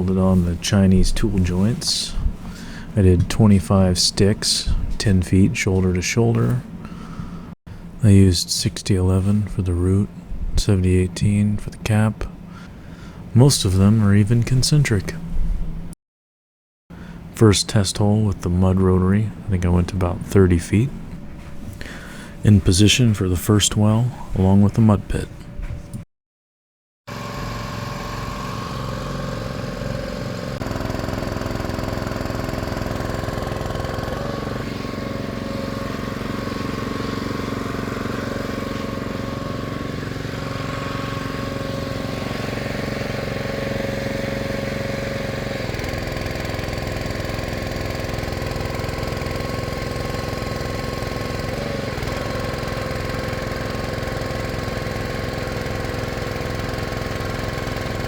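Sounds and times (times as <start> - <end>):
small gasoline engine running: 27.1 - 58.0.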